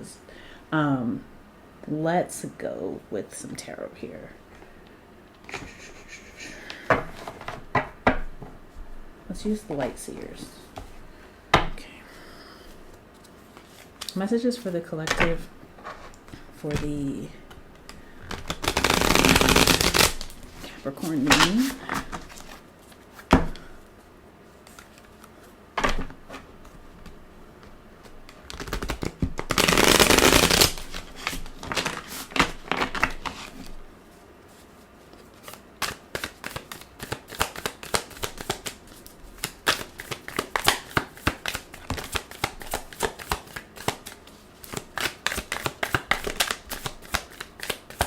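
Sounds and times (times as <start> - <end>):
cards being shuffled: 18.3 - 23.3, 28.0 - 33.8, 34.5 - 48.0
quick flicking cards: 39.4 - 48.0.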